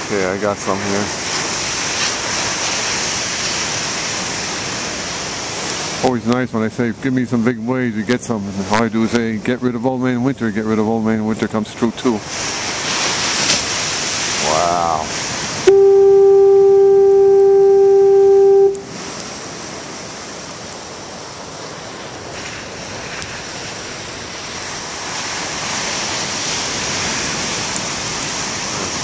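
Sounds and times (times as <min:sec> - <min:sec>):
surf washing: 0:00.0 - 0:29.0
foghorn blast: 0:15.6 - 0:18.9.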